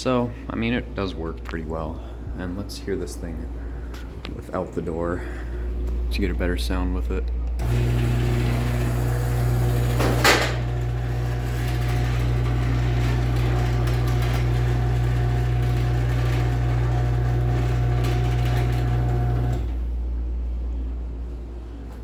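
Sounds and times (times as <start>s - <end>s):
garage door opener motor hum: 5.3s - 22.0s.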